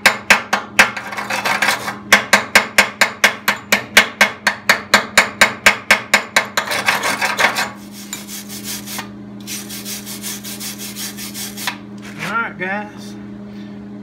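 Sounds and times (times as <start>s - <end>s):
steady low hum: 0.0s - 14.0s
scraping on metal: 1.0s - 2.0s, 6.6s - 8.9s
hand hammer striking steel: 2.1s - 6.6s
light rubbing strokes: 7.8s - 12.3s.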